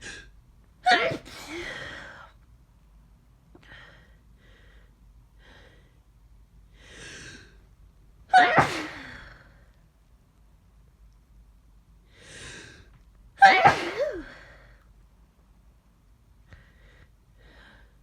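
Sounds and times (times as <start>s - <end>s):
person sneezing: 0.9s - 2.2s, 8.3s - 9.4s, 13.4s - 14.6s.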